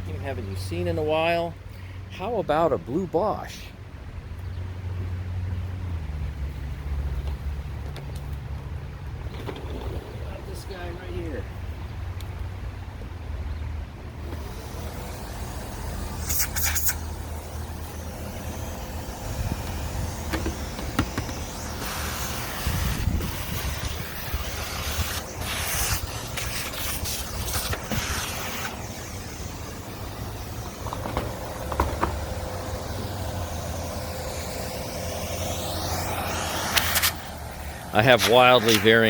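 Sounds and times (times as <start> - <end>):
vacuum cleaner running: 14.2 - 16.2, 17.0 - 39.0.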